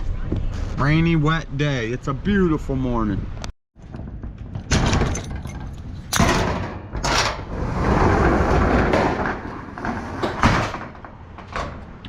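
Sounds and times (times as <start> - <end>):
sharp knocks and thuds: 3.8 - 7.1
rough scraping or rustling: 7.4 - 10.5.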